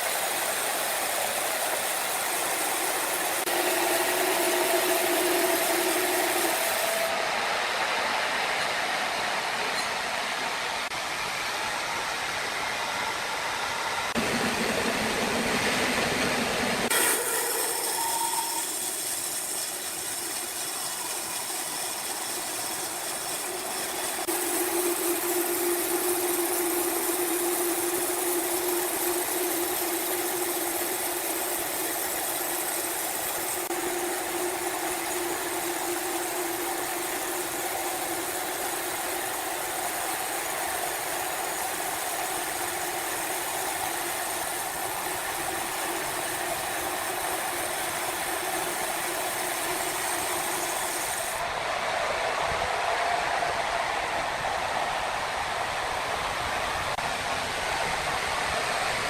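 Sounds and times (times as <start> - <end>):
sawmill machinery humming: 0.0 - 59.0.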